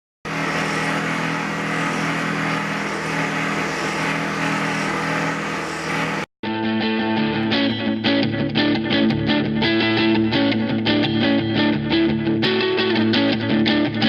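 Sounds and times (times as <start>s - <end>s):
motor-driven machine humming: 0.3s - 6.3s
guitar music: 6.4s - 14.0s.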